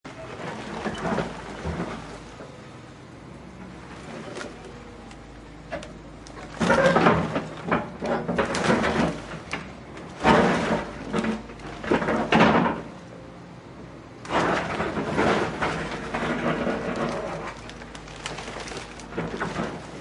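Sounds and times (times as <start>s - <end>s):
debris crashing and crunching: 3.7s - 13.1s, 14.2s - 20.0s.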